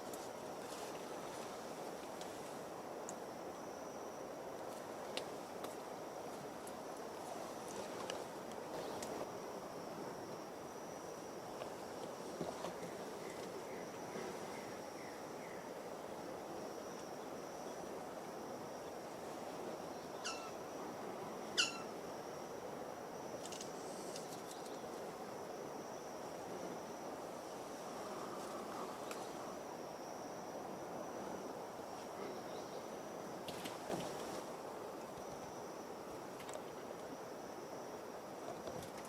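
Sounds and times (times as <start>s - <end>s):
insect-like whine: 0.0s - 39.0s
low hiss: 0.0s - 39.0s
falling bird calls: 20.1s - 20.6s, 21.6s - 21.9s.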